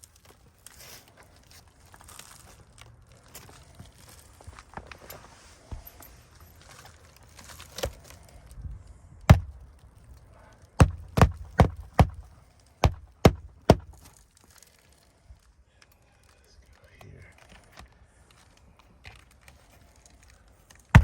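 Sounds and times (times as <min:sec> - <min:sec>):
shingles rustling and scraping: 0:00.0 - 0:21.0
hammer striking nails: 0:09.3 - 0:09.6, 0:10.8 - 0:14.1.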